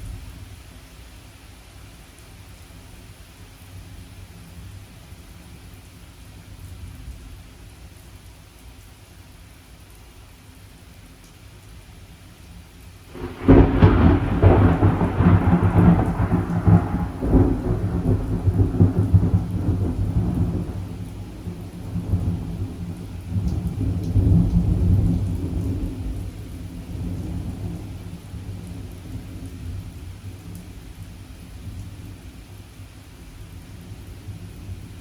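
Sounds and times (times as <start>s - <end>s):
steady rain: 0.0s - 35.0s
thunder clap and rumble: 13.2s - 29.4s.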